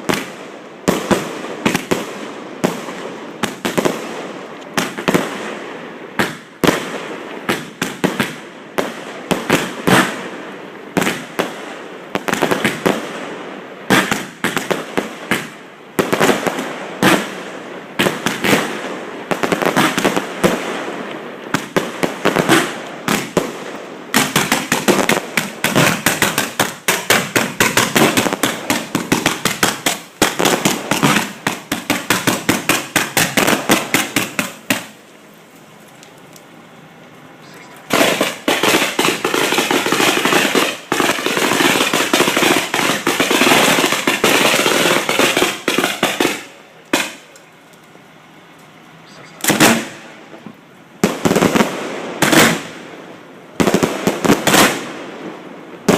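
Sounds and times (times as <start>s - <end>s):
fireworks crackling: 0.0s - 55.9s
fireworks shells banging: 24.1s - 35.0s, 37.5s - 47.3s.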